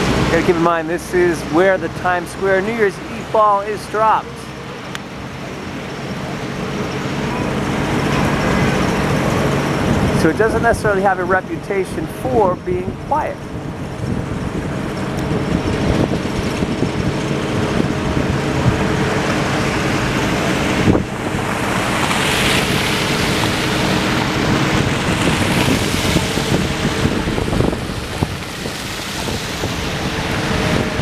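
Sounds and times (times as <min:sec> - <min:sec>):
traffic hum: 0:00.0 - 0:31.0
wind on microphone: 0:06.6 - 0:31.0.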